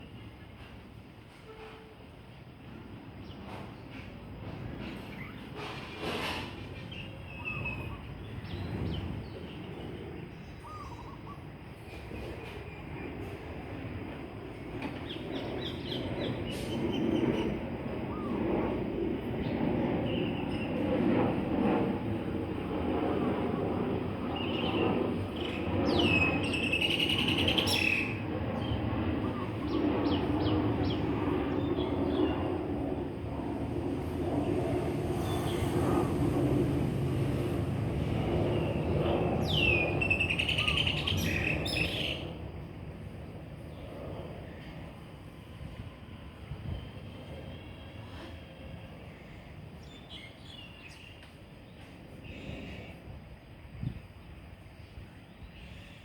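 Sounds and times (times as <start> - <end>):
small birds calling: 10.4 - 11.4, 38.5 - 42.3.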